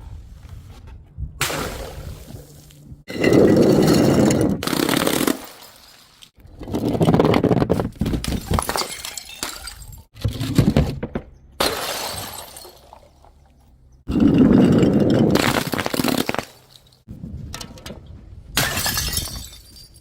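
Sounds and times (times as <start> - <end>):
glass bottles shattering: 3.1 - 6.3, 8.1 - 10.1, 11.6 - 13.5, 14.1 - 17.0, 18.6 - 20.0.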